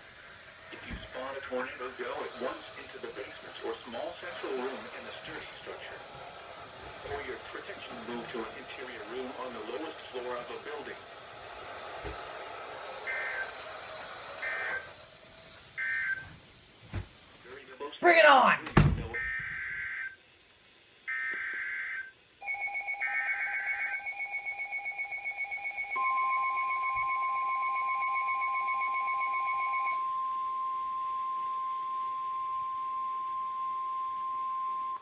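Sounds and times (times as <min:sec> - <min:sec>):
fast-pulsing beep alarm: 0:13.0 - 0:13.5, 0:14.4 - 0:14.9, 0:21.1 - 0:35.0
screeching data bursts: 0:13.0 - 0:13.6, 0:14.4 - 0:15.0
steady warning alarm tone: 0:13.0 - 0:15.1, 0:15.7 - 0:16.4, 0:19.1 - 0:20.2, 0:21.1 - 0:35.0.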